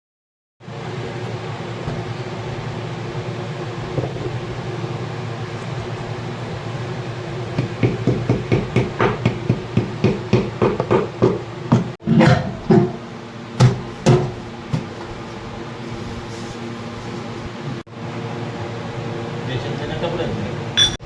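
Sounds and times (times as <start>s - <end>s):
washing machine running: 0.6s - 17.9s
washing machine drum tumbling: 7.6s - 17.8s.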